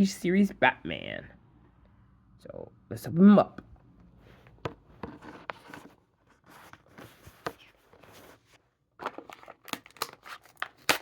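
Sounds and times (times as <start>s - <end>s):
plastic and card crinkling: 5.1s - 11.0s.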